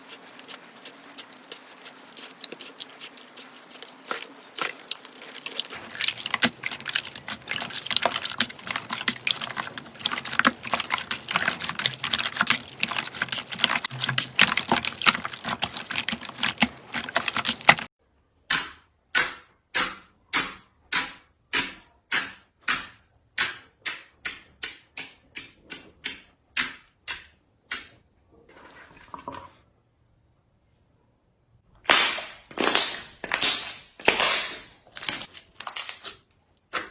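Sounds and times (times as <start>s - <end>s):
slime crackling and clicking: 0.0s - 17.9s
slime popping: 0.0s - 17.9s.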